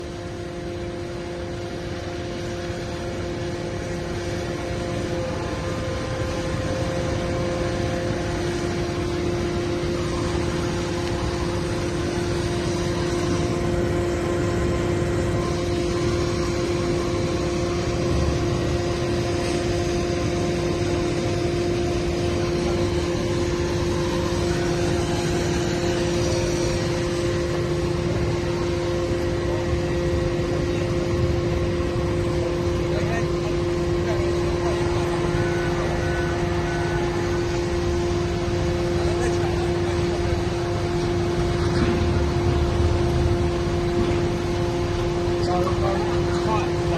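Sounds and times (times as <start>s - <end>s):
heavy machinery engine rumble: 0.0s - 46.9s
hydraulic whine: 0.0s - 46.9s.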